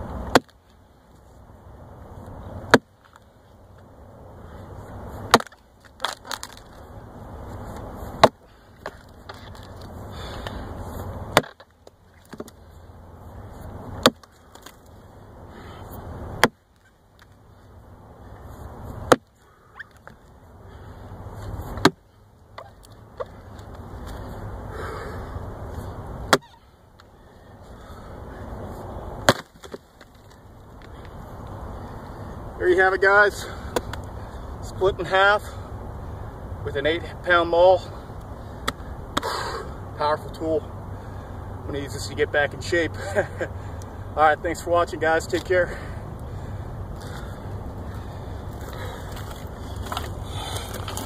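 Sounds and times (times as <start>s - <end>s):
maul chopping log: 0.2s - 0.6s, 2.7s - 2.9s, 5.3s - 6.7s, 8.2s - 9.7s, 11.3s - 12.6s, 14.0s - 14.8s, 16.4s - 16.6s, 19.0s - 19.3s, 21.8s - 22.0s, 26.3s - 26.6s, 29.2s - 30.1s
small wood knocks: 11.4s - 12.6s.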